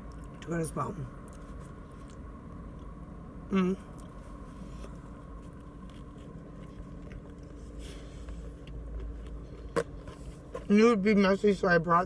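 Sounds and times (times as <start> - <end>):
low hum inside a car: 0.0 - 12.0
chewing a sandwich: 1.2 - 3.0, 3.7 - 10.7.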